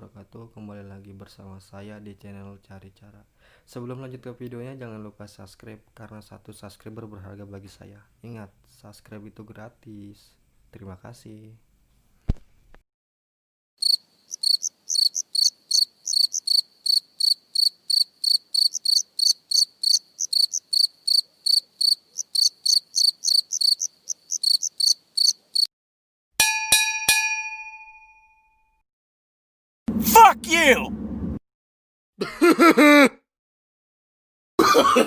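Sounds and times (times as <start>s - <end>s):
crickets chirping: 13.8s - 25.7s
ringing dings: 26.4s - 28.8s.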